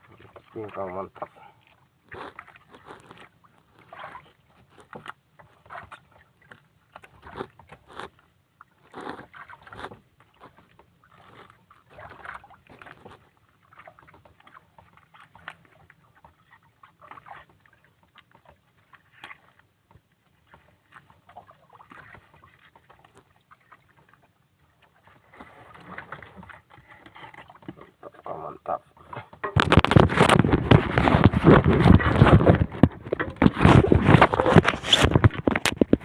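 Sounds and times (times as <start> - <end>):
rustles and knocks of handling: 29.0 - 36.0.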